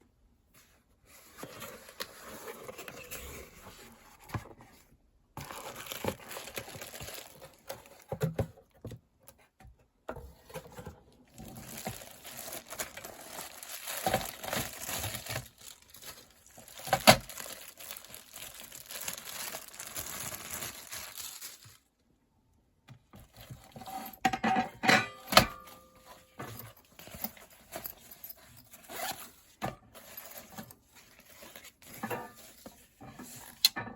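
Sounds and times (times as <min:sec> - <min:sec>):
packaging rustling and crinkling: 0:01.1 - 0:08.8, 0:10.5 - 0:22.0, 0:25.6 - 0:33.6.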